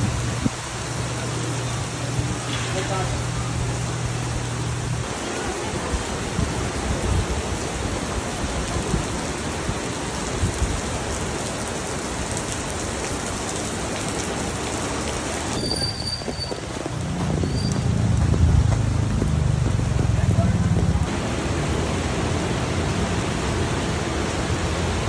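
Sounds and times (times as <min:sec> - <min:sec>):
heavy rain pouring: 0:00.0 - 0:25.0
wind buffeting microphone: 0:14.1 - 0:21.1.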